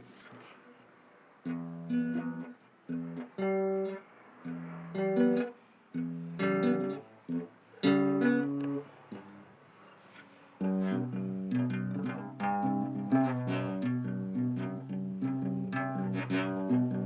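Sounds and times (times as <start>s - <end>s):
acoustic guitar strumming chords: 1.4s - 17.0s.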